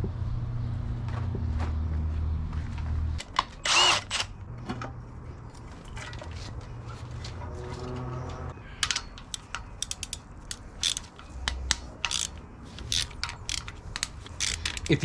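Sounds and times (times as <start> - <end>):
ratchet wrench clicking: 8.8 - 15.0.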